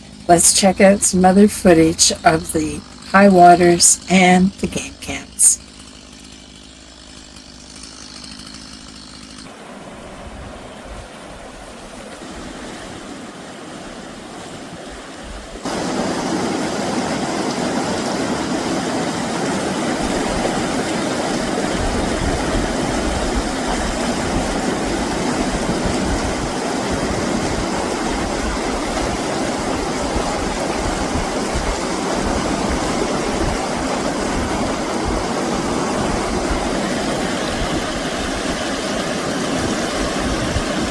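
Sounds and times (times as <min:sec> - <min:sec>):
rushing river water: 0:09.5 - 0:40.9.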